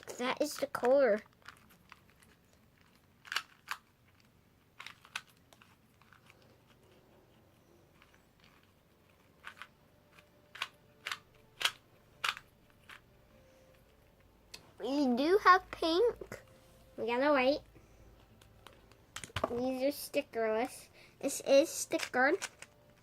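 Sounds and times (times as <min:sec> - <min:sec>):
plastic cubes clicking: 0:00.4 - 0:06.8, 0:07.9 - 0:13.0, 0:18.4 - 0:19.6, 0:21.8 - 0:23.0.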